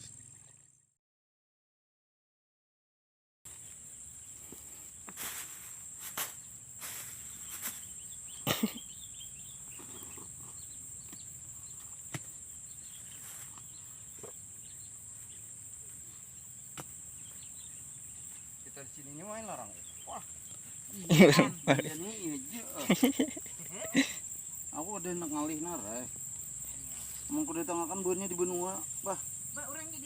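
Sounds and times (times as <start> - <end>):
crickets buzzing: 0.0 - 1.0, 3.5 - 30.0
short rustles: 4.5 - 8.0.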